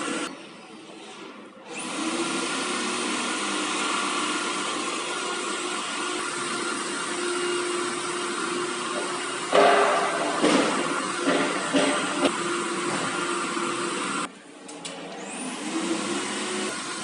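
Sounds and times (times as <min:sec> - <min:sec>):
router spindle motor whining: 0:10.7 - 0:14.3.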